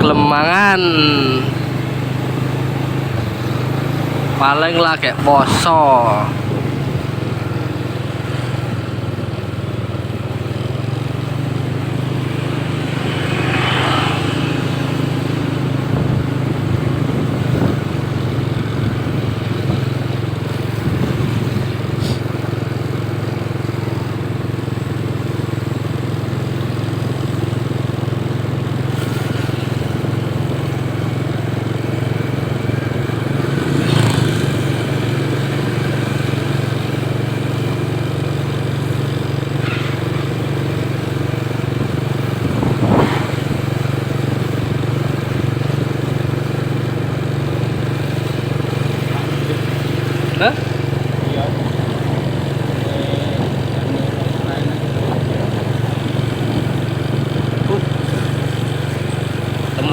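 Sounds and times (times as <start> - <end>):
motorcycle engine running: 0.0 - 59.9.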